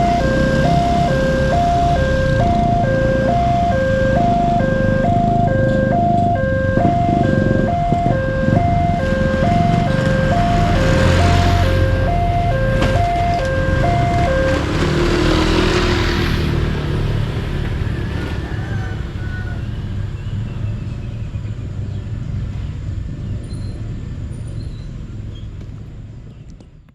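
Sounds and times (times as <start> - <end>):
low rumble: 0.0 - 14.9
level crossing two-tone alarm: 0.0 - 15.8.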